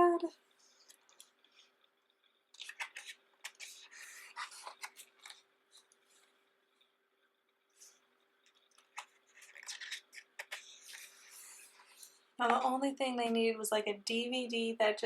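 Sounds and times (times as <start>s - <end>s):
book pages turning: 2.5s - 7.0s, 7.7s - 12.6s.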